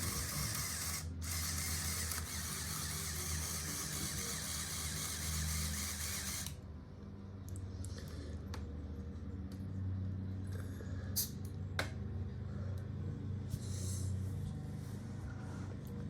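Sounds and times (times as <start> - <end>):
small motor with gear whir: 0.0 - 6.6.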